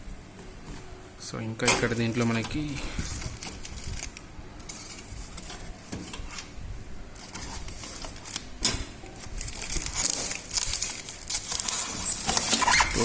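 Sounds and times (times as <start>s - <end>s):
packaging rustling: 1.8s - 6.3s, 7.2s - 13.0s.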